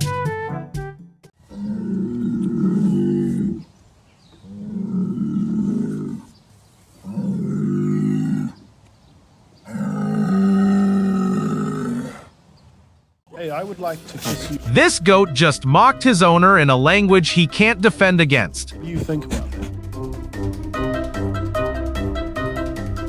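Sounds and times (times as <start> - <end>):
horse calling: 13.5 - 20.0.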